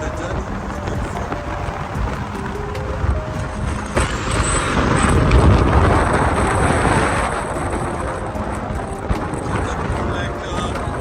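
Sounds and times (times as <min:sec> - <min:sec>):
vehicle rushing past: 0:01.4 - 0:09.8.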